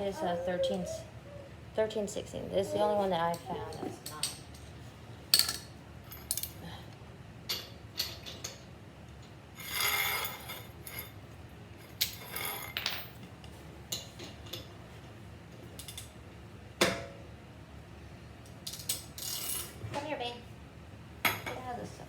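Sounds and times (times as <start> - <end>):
metal tools clinking: 5.4 - 6.6, 11.9 - 13.2.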